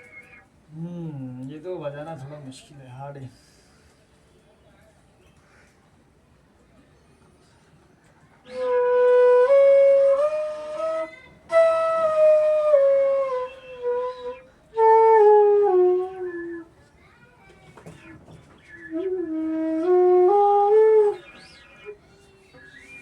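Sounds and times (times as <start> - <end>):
bamboo flute melody: 8.4 - 16.7, 18.6 - 22.0.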